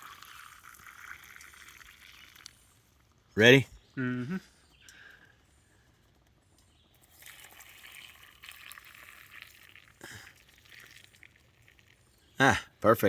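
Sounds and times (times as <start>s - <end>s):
hot water pouring into mug: 0.0s - 3.2s, 7.0s - 12.3s.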